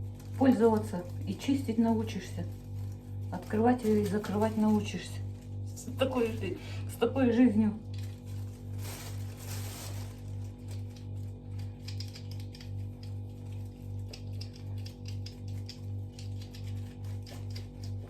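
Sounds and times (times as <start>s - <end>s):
low electrical hum: 0.0s - 18.0s
brush clicking and scratching: 10.6s - 18.0s.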